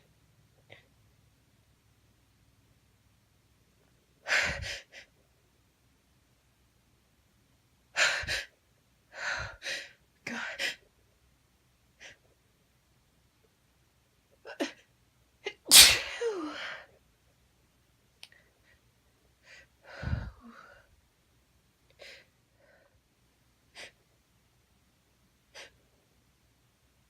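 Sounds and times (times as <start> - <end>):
woman sneezing: 15.5 - 16.7.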